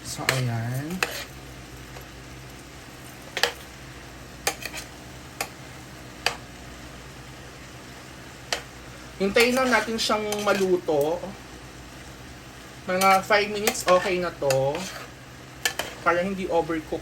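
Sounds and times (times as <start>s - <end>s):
pan cooking with low hiss: 0.0s - 17.0s
utensil clicking against pan: 15.6s - 16.0s.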